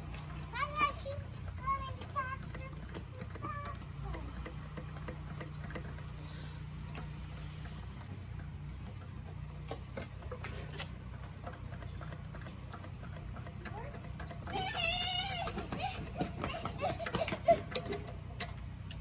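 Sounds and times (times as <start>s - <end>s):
metal screws and tools clicking: 0.3s - 9.6s, 17.0s - 19.0s.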